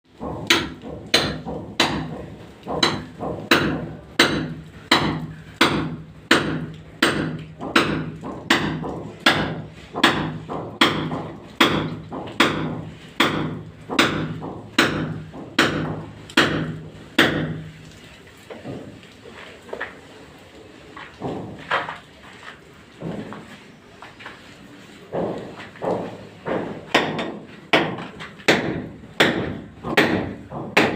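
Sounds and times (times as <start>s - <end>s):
hammering on pipe: 0.1s - 17.7s, 25.1s - 30.9s.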